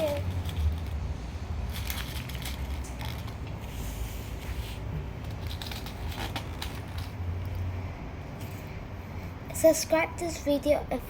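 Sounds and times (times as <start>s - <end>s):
hands rustling and clicking: 0.0s - 3.7s, 4.4s - 7.7s.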